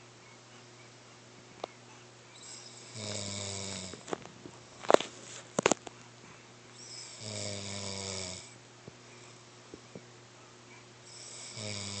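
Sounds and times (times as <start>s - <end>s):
person snoring: 2.4s - 4.2s, 6.8s - 8.6s, 11.1s - 12.0s.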